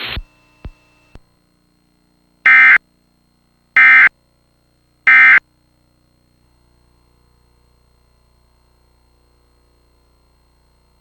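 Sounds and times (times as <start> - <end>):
digital data tone bursts: 2.5 - 2.8, 3.8 - 4.1, 5.1 - 5.4.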